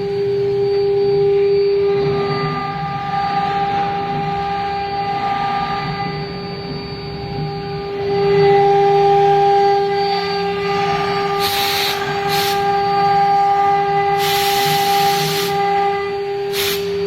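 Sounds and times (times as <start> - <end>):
router spindle whining: 0.0 - 17.0
short hissing bursts: 11.4 - 12.6, 14.2 - 15.5, 16.5 - 16.9.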